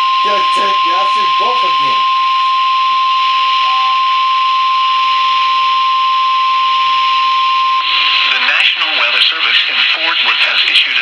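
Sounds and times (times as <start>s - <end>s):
steady single-pitch warning tone: 0.0s - 2.6s, 3.4s - 7.4s.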